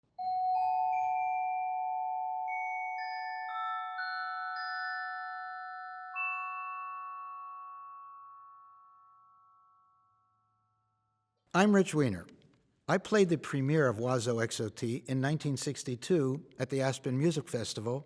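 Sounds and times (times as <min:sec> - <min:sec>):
glockenspiel notes ringing: 0:00.2 - 0:11.3.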